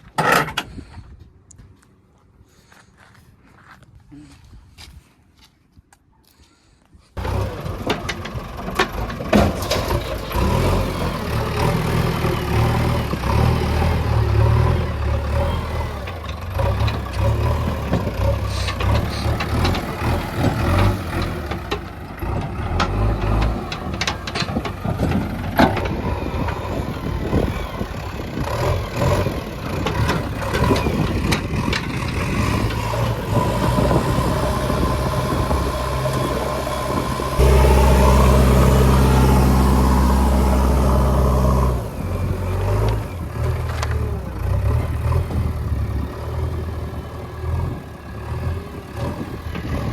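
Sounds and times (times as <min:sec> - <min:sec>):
knocks and clatter: 0:07.2 - 0:10.8, 0:16.0 - 0:26.7
diesel engine droning: 0:07.2 - 0:49.9.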